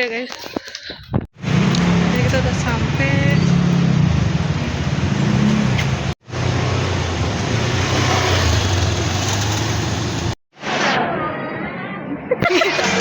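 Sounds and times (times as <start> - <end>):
car engine hum: 1.4 - 10.4.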